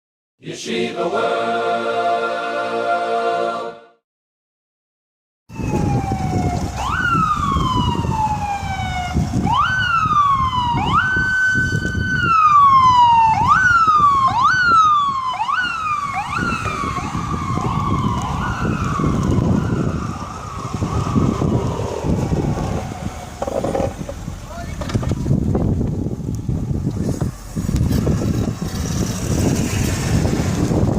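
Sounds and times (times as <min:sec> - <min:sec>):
emergency vehicle siren wailing: 0:05.5 - 0:24.5.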